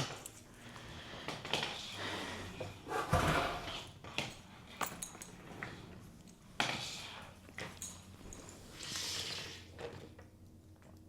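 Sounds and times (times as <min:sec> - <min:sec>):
heavy thump: 0:02.9 - 0:03.7.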